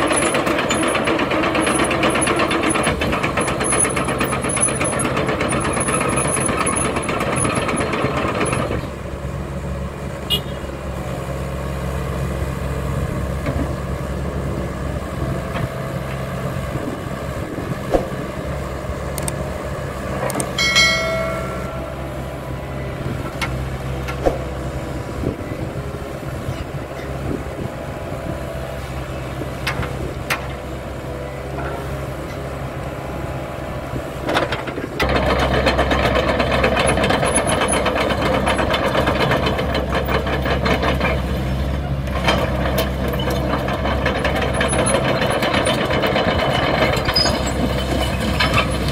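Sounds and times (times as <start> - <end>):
excavator diesel engine running: 0.0 - 48.9
short high-pitched tone: 20.6 - 22.4.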